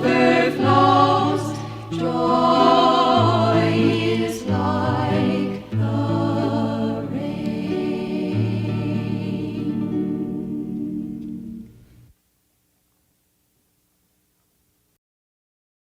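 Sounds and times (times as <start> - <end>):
women's choir singing a hymn: 0.0 - 11.7
guitar accompaniment: 0.0 - 12.1.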